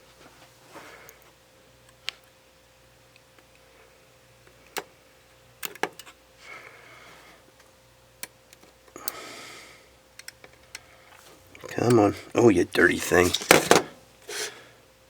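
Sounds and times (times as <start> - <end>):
small tool clicking on camera parts: 10.2 - 10.9.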